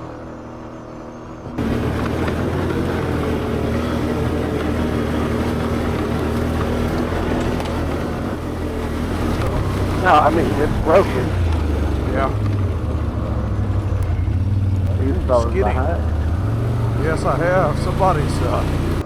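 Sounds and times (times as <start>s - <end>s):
atv engine running: 0.0s - 19.0s
trail noise: 0.0s - 19.0s.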